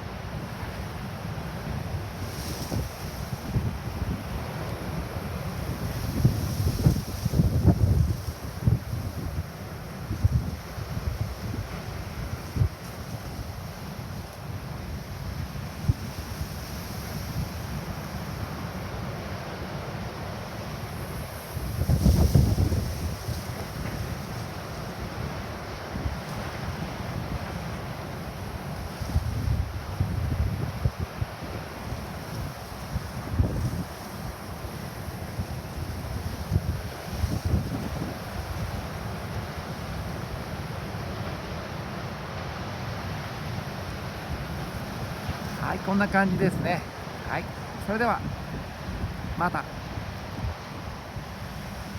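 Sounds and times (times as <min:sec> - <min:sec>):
small surf: 0:00.0 - 0:51.9
wind buffeting microphone: 0:05.7 - 0:13.5, 0:21.5 - 0:24.4, 0:32.4 - 0:34.3, 0:35.3 - 0:38.9.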